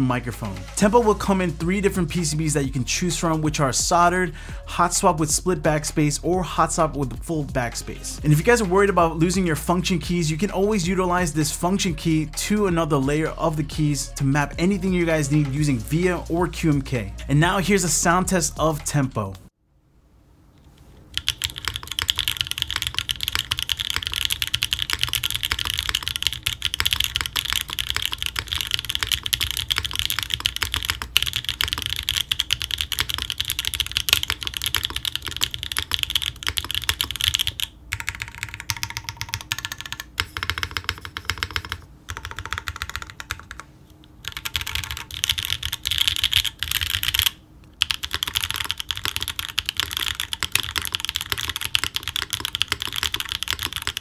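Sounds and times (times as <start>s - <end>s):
mechanical keyboard typing: 21.1s - 54.0s.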